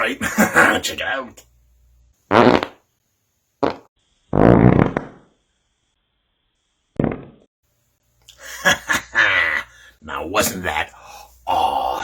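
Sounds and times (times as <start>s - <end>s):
fart noises: 2.3s - 2.8s, 3.6s - 5.4s, 7.0s - 7.5s.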